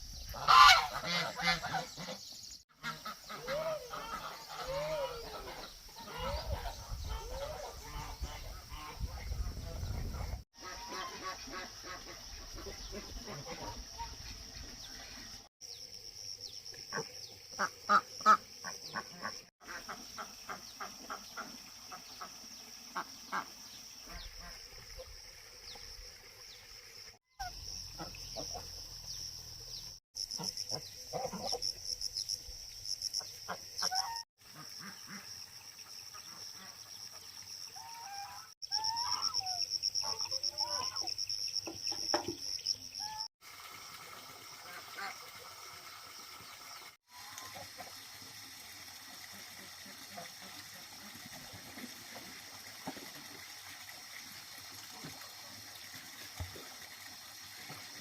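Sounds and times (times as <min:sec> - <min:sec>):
ducks quacking: 0:00.3 - 0:14.3, 0:17.6 - 0:21.6, 0:33.5 - 0:35.3.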